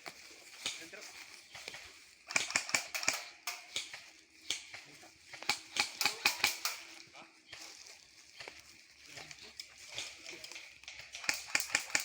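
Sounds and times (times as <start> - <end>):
airsoft guns firing: 1.6 - 7.0, 10.9 - 12.0.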